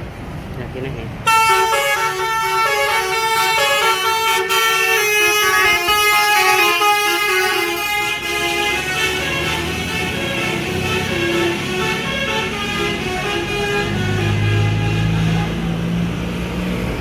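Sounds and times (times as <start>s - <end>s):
bus air horn playing a tune: 1.3s - 15.9s.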